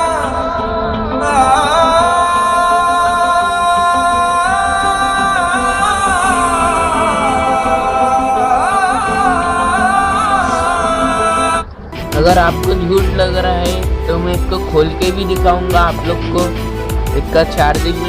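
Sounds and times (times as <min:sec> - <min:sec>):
song from a portable speaker: 0:00.0 - 0:18.0.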